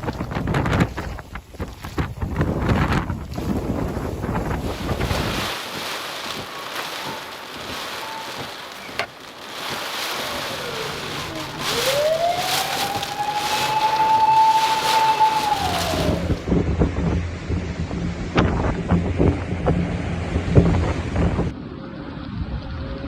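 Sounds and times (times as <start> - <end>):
wind and rain on microphone: 0.0 - 23.0
siren wailing: 10.2 - 16.5.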